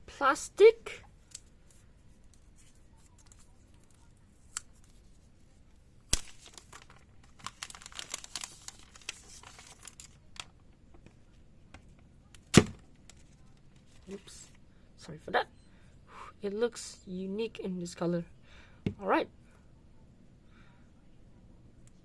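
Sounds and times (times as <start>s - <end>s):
plastic film crinkling and tearing: 6.1s - 10.5s.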